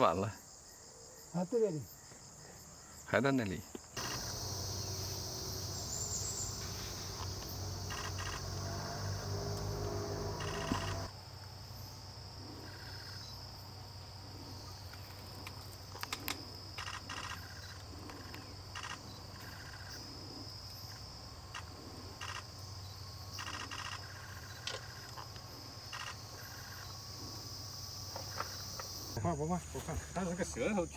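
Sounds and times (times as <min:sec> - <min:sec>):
insect chirps: 0:00.0 - 0:30.9
insects droning: 0:00.0 - 0:30.9
sharp clicks: 0:07.2 - 0:08.7.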